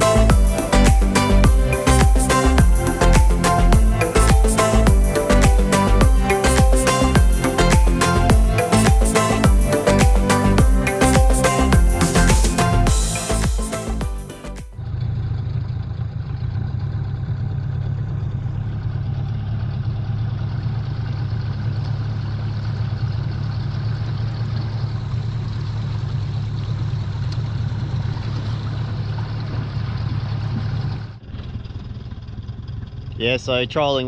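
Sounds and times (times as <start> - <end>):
outboard motor droning: 0.0 - 13.4, 15.0 - 33.1.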